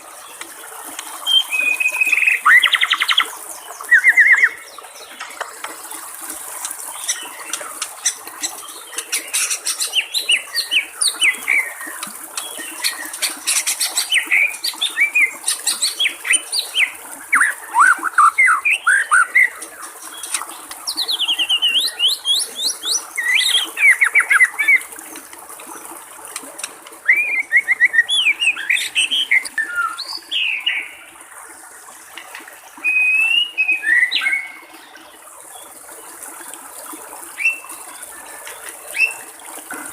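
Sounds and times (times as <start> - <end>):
trickling water: 0.0 - 39.9
bird singing whistled notes: 1.2 - 3.2, 27.0 - 30.8, 32.8 - 34.6.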